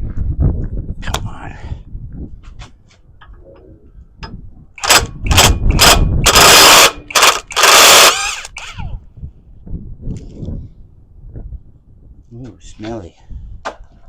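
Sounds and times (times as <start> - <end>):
impact wrench rattling: 4.8 - 9.0
impact wrench whine spinning down: 4.8 - 9.0.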